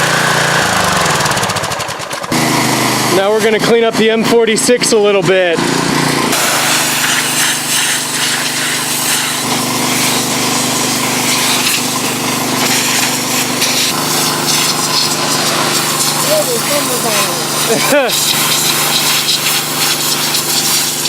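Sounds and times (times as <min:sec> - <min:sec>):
pressure washer engine running: 0:00.0 - 0:21.0
water spray hissing on metal: 0:06.3 - 0:21.0.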